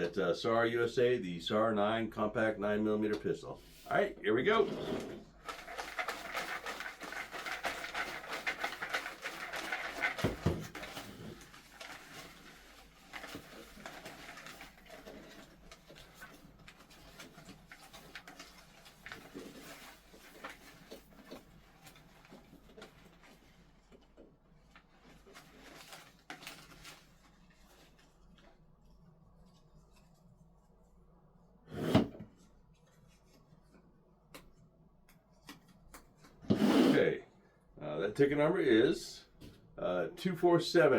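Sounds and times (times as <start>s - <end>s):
paper tickets rustling: 5.3s - 23.4s.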